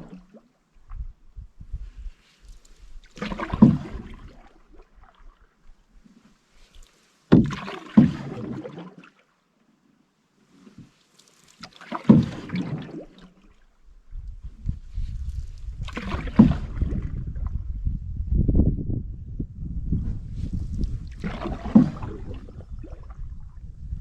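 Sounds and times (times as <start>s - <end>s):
canoe paddle splashing in water: 0.0s - 0.6s, 2.1s - 9.4s, 10.4s - 13.8s, 14.9s - 17.6s, 20.4s - 23.6s
wind rumble on microphone: 0.8s - 6.0s, 13.8s - 24.0s.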